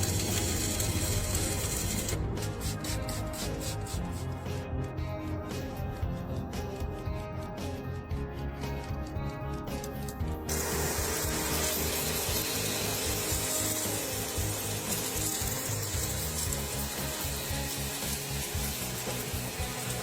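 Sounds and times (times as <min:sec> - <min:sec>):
power tool rasping hiss: 0:00.0 - 0:04.4, 0:10.4 - 0:20.0
background music: 0:00.0 - 0:20.0.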